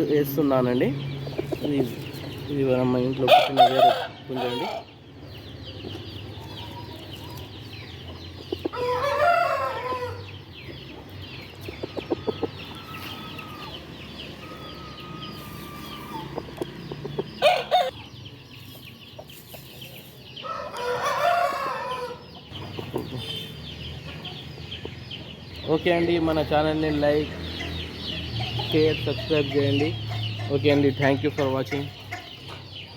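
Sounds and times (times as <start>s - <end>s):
chickens clucking: 0.0s - 32.9s
roosters crowing: 3.2s - 5.0s, 8.2s - 11.0s, 11.8s - 18.1s, 20.4s - 22.5s.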